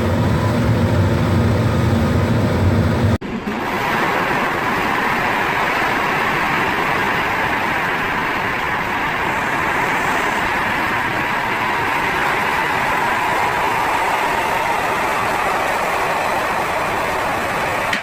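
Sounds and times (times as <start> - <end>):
mill machinery running: 0.0 - 18.0.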